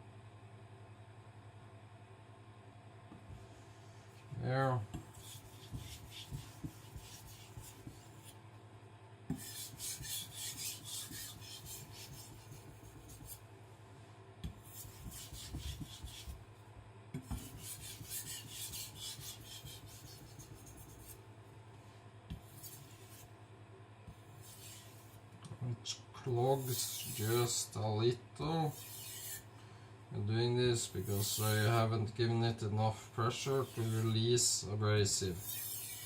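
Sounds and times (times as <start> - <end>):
knife scraping on whetstone: 5.1 - 8.4, 9.3 - 13.4, 14.6 - 16.4, 17.2 - 21.2, 22.3 - 23.3, 24.2 - 25.2, 26.4 - 27.7, 28.6 - 29.5, 30.8 - 31.8, 33.3 - 34.2, 35.3 - 36.0.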